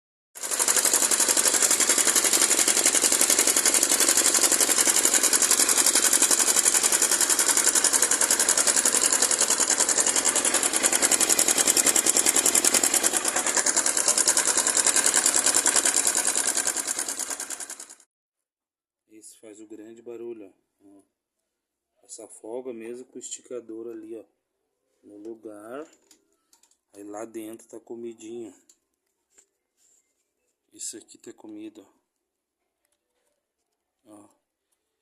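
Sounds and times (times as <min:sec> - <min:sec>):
motorcycle engine running: 0:00.4 - 0:18.0.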